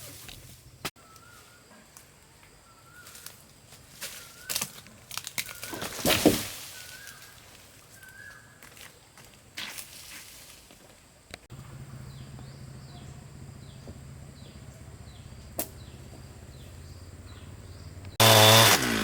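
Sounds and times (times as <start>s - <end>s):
tree crashing down: 4.4s - 7.4s, 18.2s - 19.0s
wood cracking snaps: 4.5s - 6.6s
bird rising chirp: 11.6s - 18.2s.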